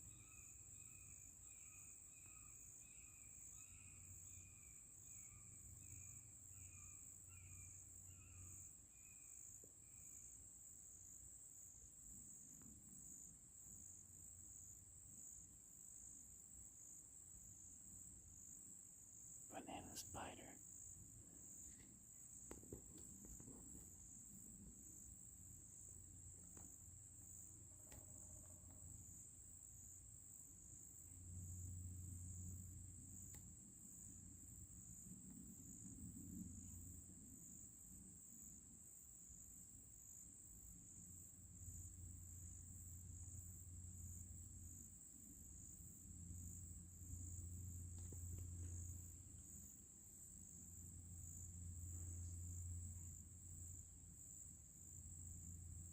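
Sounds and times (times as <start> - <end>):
insect chorus trilling: 0.0 - 11.7.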